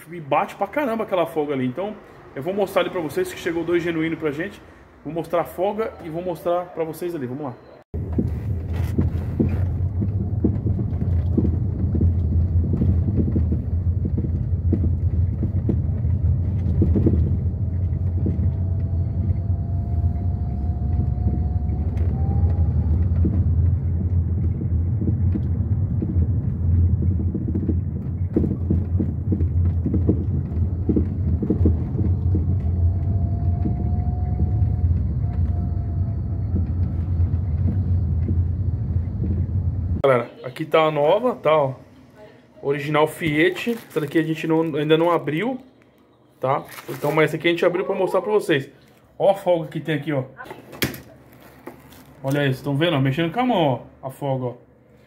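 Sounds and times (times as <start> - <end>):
car road rumble: 8.0 - 40.0
suspension knocks: 8.0 - 40.0.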